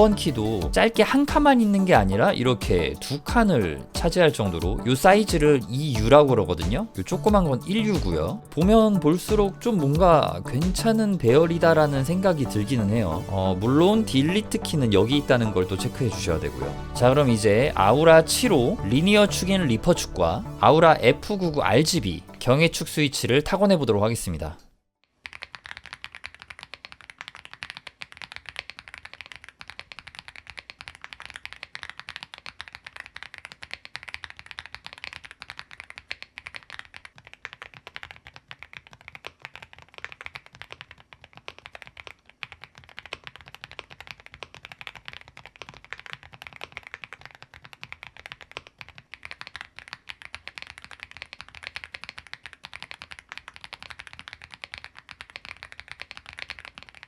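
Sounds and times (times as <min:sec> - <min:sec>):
fast typing on mechanical keyboard: 0:00.0 - 0:13.5, 0:25.1 - 0:57.0.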